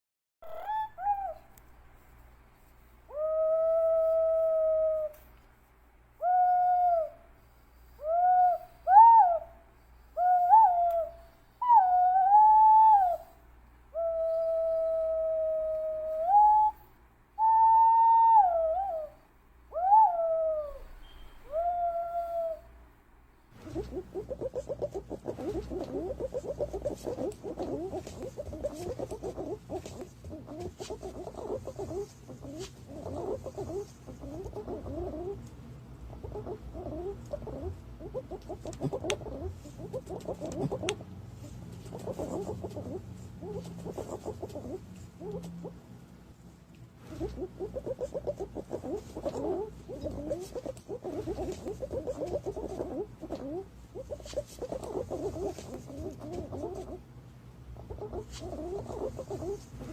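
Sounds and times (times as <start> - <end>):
pigeon whistled song: 8.0 - 9.5, 10.2 - 22.7, 23.6 - 35.4
rapid bird chattering: 23.6 - 35.4, 36.2 - 45.7, 47.1 - 57.0, 57.8 - 59.9.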